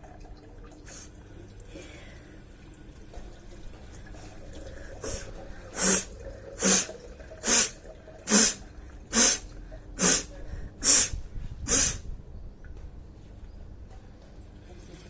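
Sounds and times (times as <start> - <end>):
person sneezing: 5.0 - 12.0.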